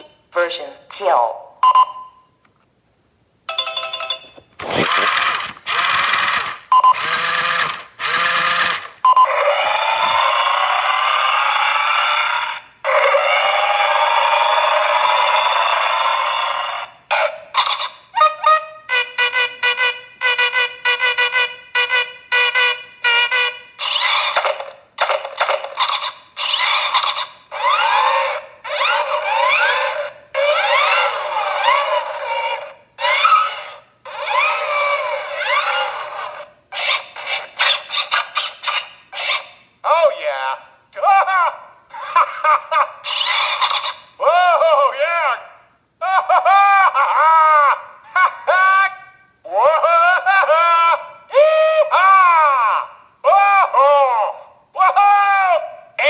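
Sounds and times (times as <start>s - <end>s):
short beeps: 1.6s - 2.4s
toy electronic sound effects: 4.6s - 10.6s, 15.1s - 39.7s.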